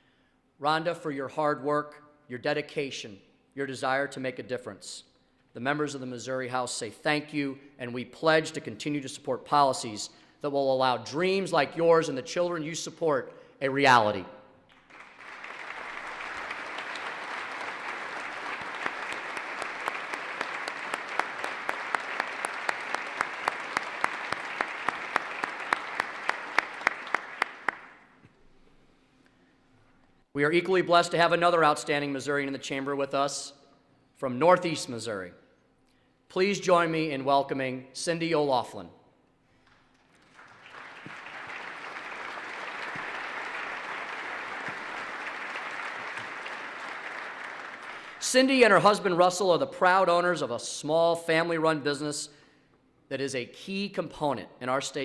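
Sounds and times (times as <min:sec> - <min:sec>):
audience applauding: 0:14.7 - 0:28.2, 0:39.6 - 0:48.8
sharp loud claps: 0:14.7 - 0:28.2, 0:39.6 - 0:48.2.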